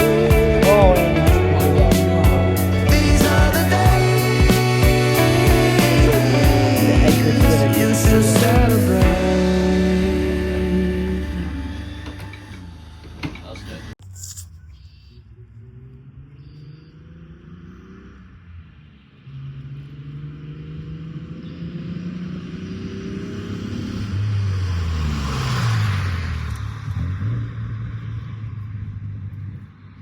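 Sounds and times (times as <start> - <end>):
car engine accelerating: 0.0 - 14.0, 15.3 - 30.0.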